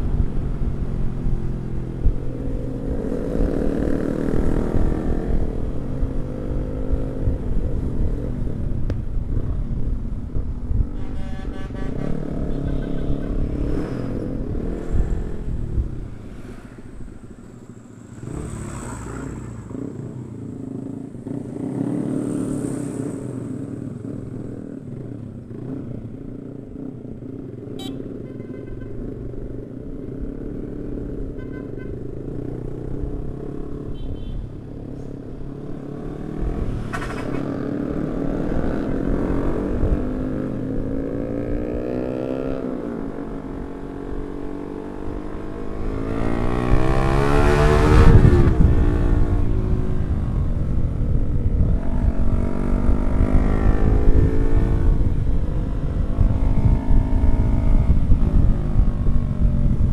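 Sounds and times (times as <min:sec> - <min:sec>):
motorcycle engines running: 0:11.9 - 0:59.9.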